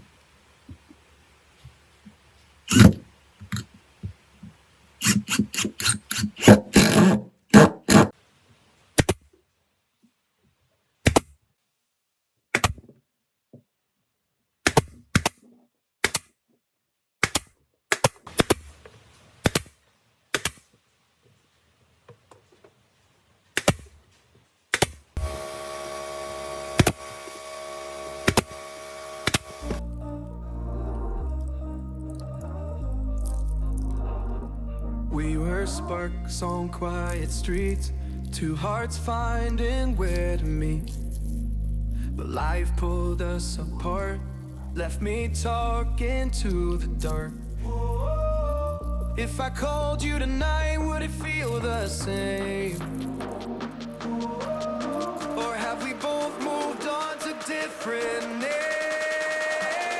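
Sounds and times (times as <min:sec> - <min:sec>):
knocks of hand tools and wood: 0:05.0 - 0:08.1
background music: 0:29.7 - 0:39.4, 0:45.6 - 0:59.9.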